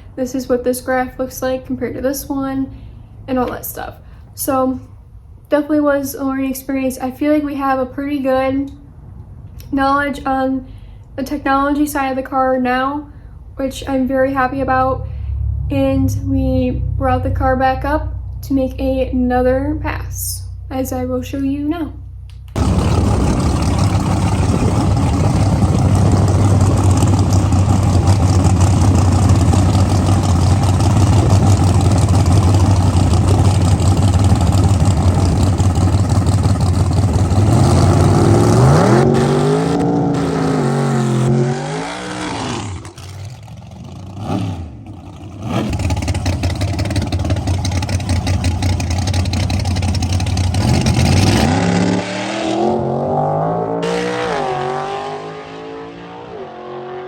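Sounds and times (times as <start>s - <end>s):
drag racing car engine revving: 22.6s - 57.0s.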